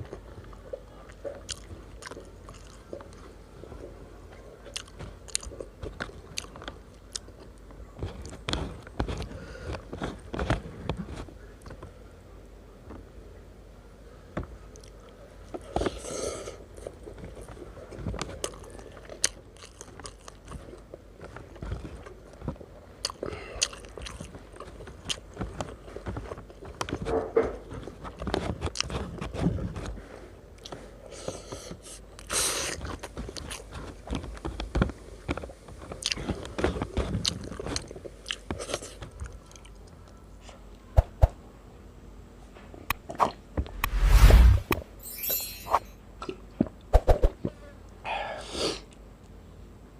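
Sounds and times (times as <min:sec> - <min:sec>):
person chewing with crunches: 0:00.0 - 0:03.4, 0:04.6 - 0:11.8, 0:14.7 - 0:40.0.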